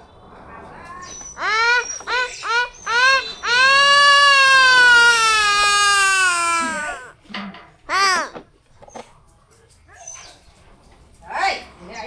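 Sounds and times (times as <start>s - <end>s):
rooster crowing: 3.4s - 7.1s.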